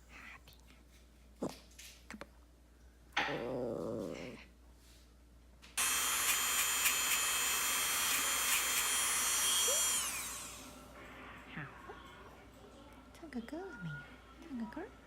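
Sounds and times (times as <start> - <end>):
appliance motor whining: 5.8 - 10.8.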